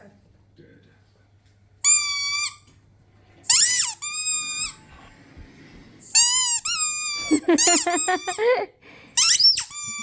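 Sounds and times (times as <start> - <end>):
squeaky dog toy squeaking: 1.8 - 2.7, 3.5 - 4.8, 6.1 - 8.4, 9.2 - 10.0.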